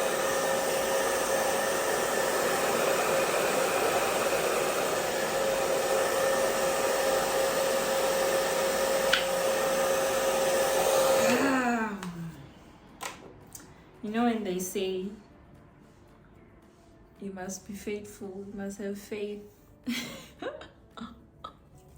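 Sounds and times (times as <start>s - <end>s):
hair dryer blowing: 0.0s - 12.5s.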